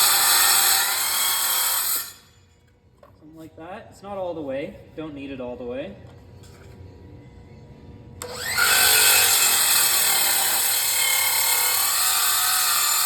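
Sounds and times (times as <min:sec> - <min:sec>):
power saw cutting metal post: 0:00.0 - 0:02.3, 0:08.2 - 0:13.0.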